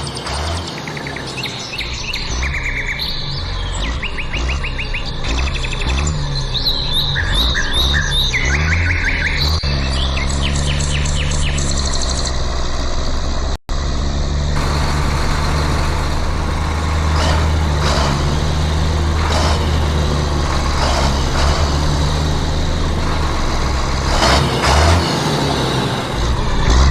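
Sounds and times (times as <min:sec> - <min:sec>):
small birds chirping: 0:00.0 - 0:12.6, 0:14.6 - 0:26.4
low motor hum: 0:10.0 - 0:26.9
short scraping strokes: 0:14.6 - 0:26.4.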